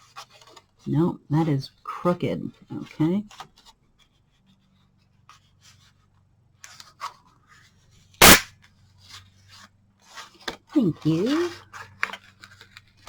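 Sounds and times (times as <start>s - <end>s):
loud sharp knock: 8.2s - 8.4s.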